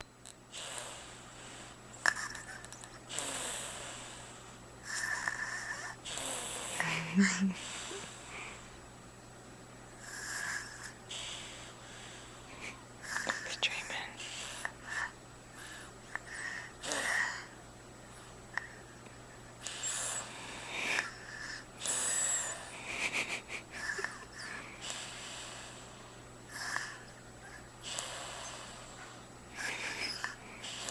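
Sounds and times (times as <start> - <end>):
baby snoring: 0.5 - 8.3, 10.0 - 11.7, 15.6 - 17.6, 19.6 - 22.8, 23.8 - 29.0, 29.6 - 30.9.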